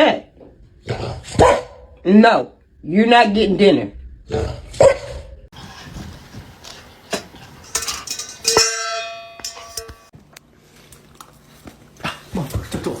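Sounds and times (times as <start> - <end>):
metal object clanging: 7.1 - 10.1.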